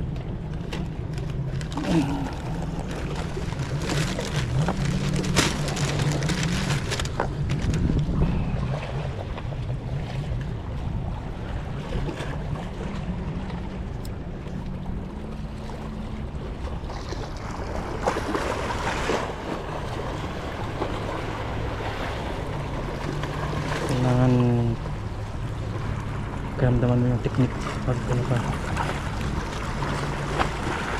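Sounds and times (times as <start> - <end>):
boat engine drone: 0.0 - 30.9
rustle and clatter: 0.1 - 8.2
wind noise on microphone: 3.4 - 9.2.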